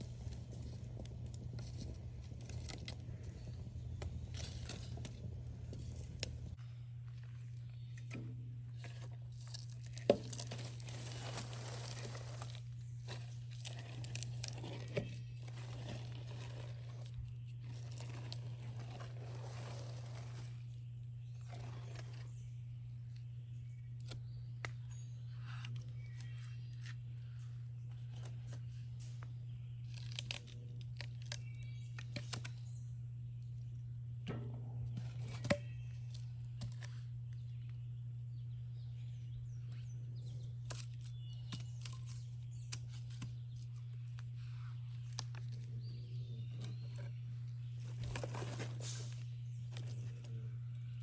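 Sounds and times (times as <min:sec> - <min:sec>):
wood campfire crackling: 0:00.0 - 0:06.6, 0:09.3 - 0:20.6
steady low hum: 0:00.0 - 0:51.0
rustling: 0:08.7 - 0:22.4, 0:42.9 - 0:50.4.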